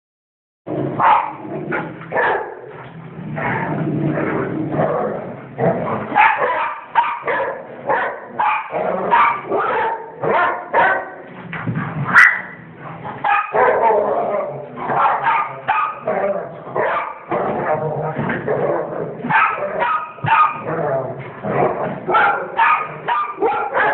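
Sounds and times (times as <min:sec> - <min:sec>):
dogs barking: 0:01.0 - 0:02.8, 0:05.7 - 0:11.3, 0:12.1 - 0:20.8, 0:21.5 - 0:23.9.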